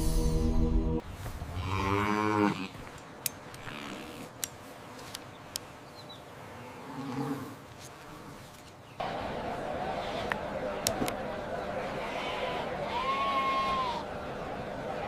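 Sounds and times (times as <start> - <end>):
background music: 0.0 - 1.0.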